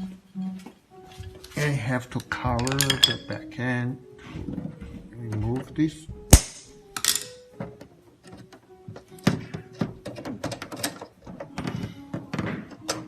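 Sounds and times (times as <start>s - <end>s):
clicks knocks and thunks of handling: 4.4s - 13.0s.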